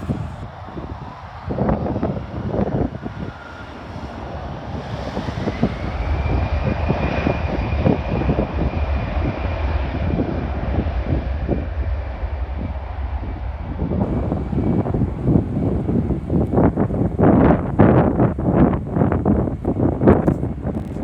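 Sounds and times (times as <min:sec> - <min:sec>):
aircraft engines whining: 0:00.0 - 0:21.0
wind buffeting microphone: 0:00.0 - 0:21.0.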